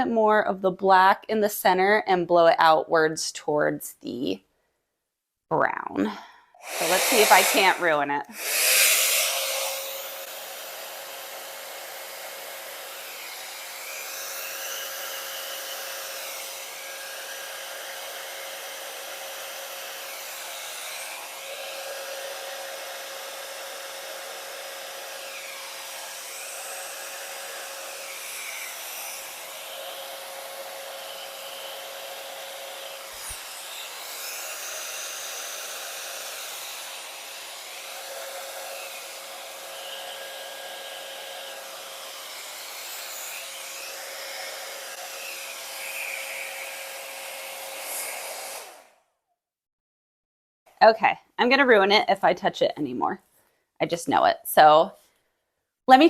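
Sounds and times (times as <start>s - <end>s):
blow dryer running: 6.6s - 49.0s.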